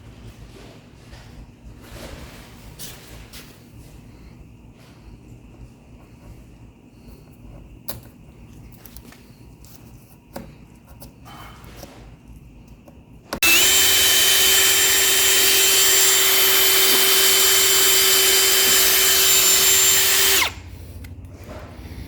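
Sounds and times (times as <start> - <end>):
power drill boring into wood: 13.4 - 20.6.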